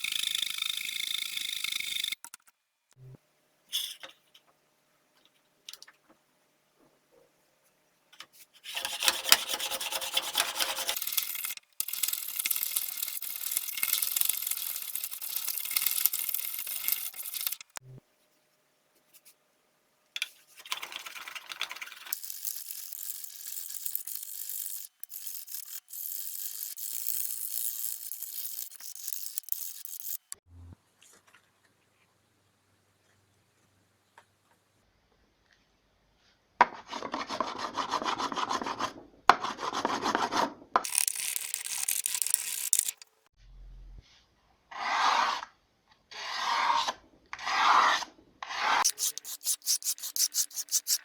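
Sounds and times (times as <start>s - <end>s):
tool scraping wood: 8.6s - 17.8s, 39.5s - 43.0s, 46.1s - 51.0s.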